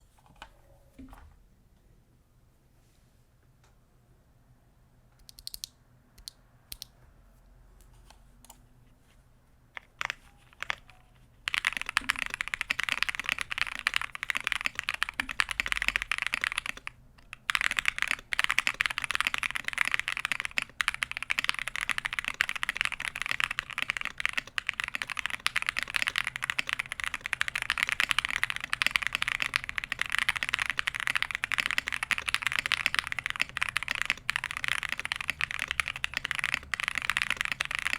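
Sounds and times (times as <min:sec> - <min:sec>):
mechanical keyboard typing: 0:09.8 - 0:37.9.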